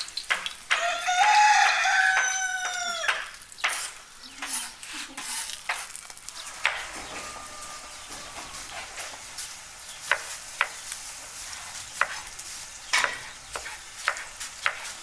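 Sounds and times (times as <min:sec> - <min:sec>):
food sizzling in a pan: 0:00.0 - 0:15.0
rooster crowing: 0:00.7 - 0:03.3, 0:06.3 - 0:09.2
utensil scraping pan: 0:03.6 - 0:09.2.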